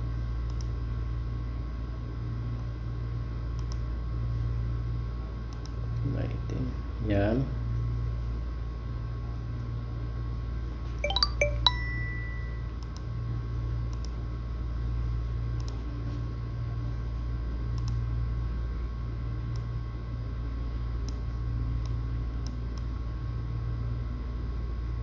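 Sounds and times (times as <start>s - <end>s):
low electrical hum: 0.0s - 25.0s
short bright dings: 11.0s - 12.7s
faint clicks: 17.8s - 18.0s.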